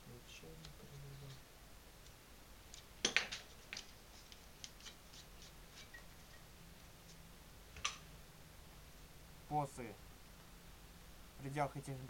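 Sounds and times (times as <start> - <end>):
small objects clicking and tapping: 2.7 - 5.0.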